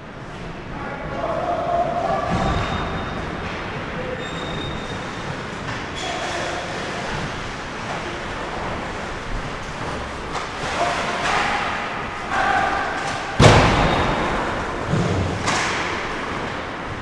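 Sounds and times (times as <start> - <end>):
ice rink noise: 0.0 - 17.0
loud bang against rink boards: 2.2 - 3.6, 10.3 - 16.6.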